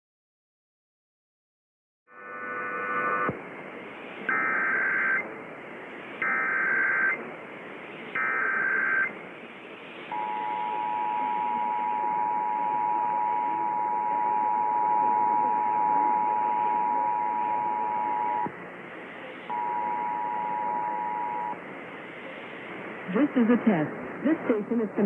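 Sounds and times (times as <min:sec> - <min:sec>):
steady hiss: 0:03.4 - 0:04.4, 0:09.1 - 0:11.3, 0:18.6 - 0:19.5, 0:21.6 - 0:25.0
two-tone attention signal: 0:10.1 - 0:18.5, 0:19.5 - 0:21.6.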